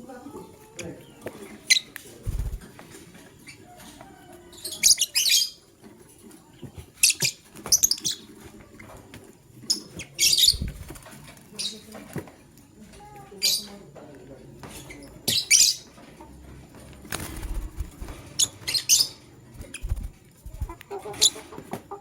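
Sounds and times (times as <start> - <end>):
lovebirds chirping: 9.7 - 11.0.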